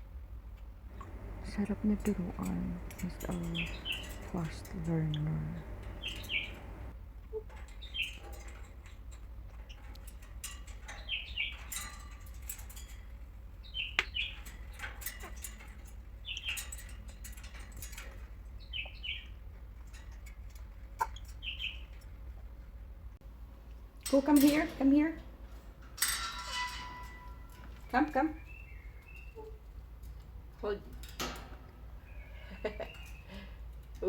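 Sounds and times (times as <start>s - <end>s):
parrot chirping: 0.9s - 6.9s.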